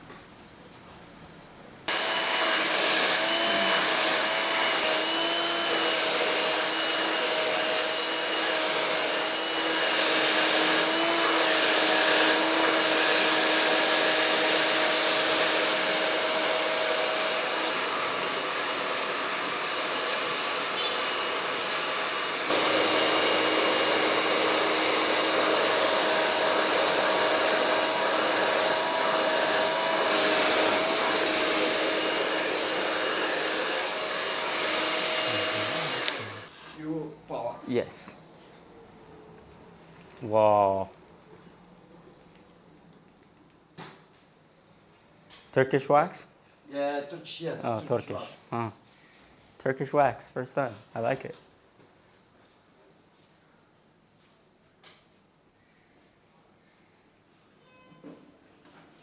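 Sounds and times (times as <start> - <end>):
hair dryer whining hum: 1.9 - 36.8.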